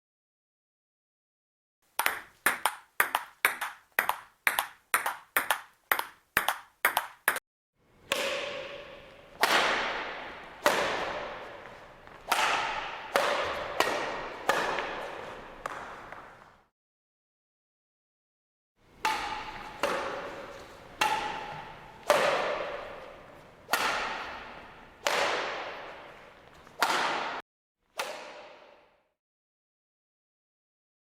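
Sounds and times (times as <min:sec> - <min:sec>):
ball hits with pitched ring: 0:19.0 - 0:26.0.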